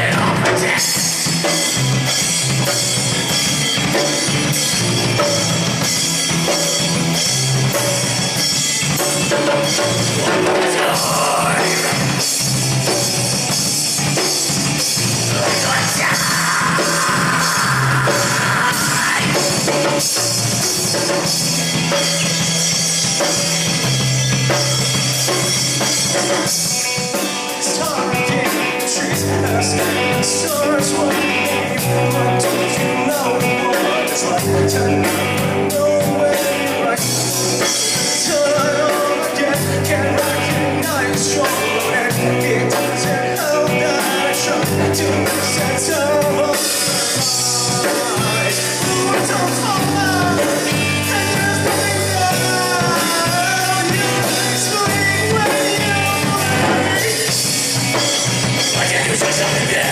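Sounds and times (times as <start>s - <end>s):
bass guitar: 0.0s - 59.9s
drum kit: 0.0s - 59.9s
guitar: 0.0s - 59.9s
person singing: 9.3s - 13.0s, 15.2s - 20.3s, 27.1s - 59.9s.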